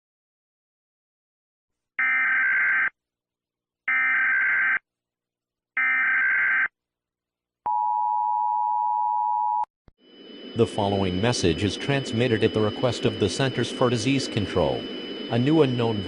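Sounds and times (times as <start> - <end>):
data tone bursts: 10.3 - 16.0.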